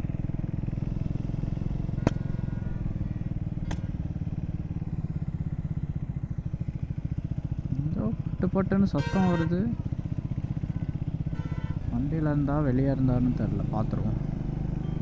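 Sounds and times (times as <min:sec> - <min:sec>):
motorcycle engine running: 0:00.0 - 0:15.0
sudden sharp cracks: 0:03.6 - 0:04.0.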